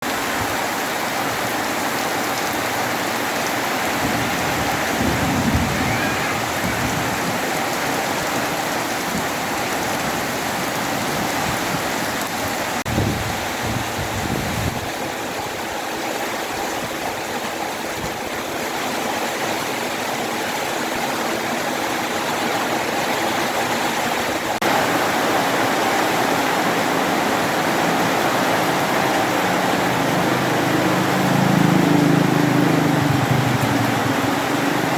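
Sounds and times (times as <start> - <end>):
heavy rain in strong wind: 0.0 - 34.9
low rumbles: 27.4 - 34.9.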